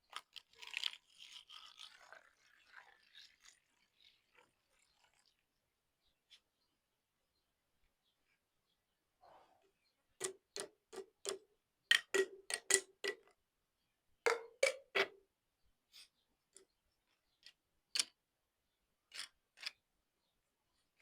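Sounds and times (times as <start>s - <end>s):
glass clinking taps: 14.3s - 15.1s.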